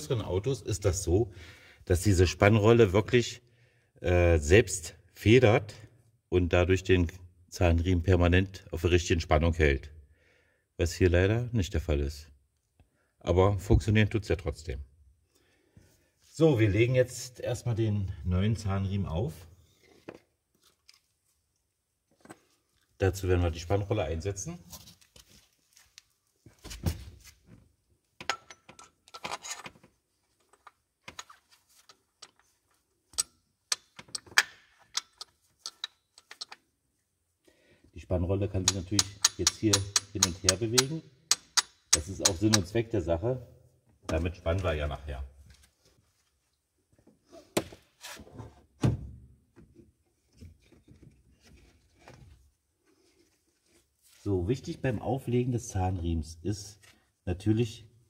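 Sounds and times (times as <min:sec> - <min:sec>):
metal clinks and taps: 0:33.1 - 0:36.6, 0:38.6 - 0:42.7.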